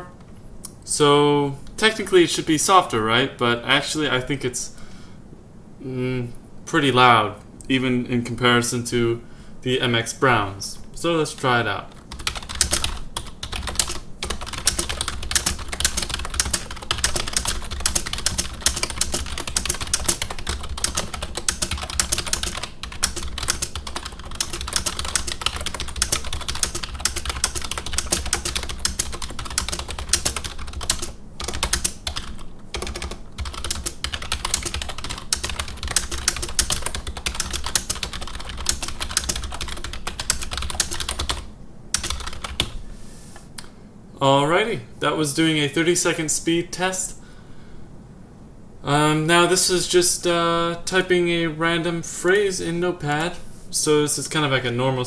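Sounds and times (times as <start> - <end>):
keyboard typing clatter: 11.9 - 42.8.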